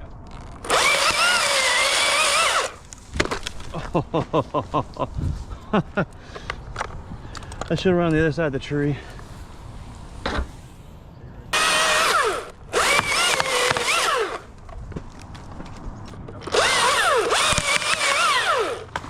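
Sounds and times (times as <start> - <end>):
chainsaw cutting wood: 0.6 - 2.8, 11.6 - 14.5, 16.4 - 19.0.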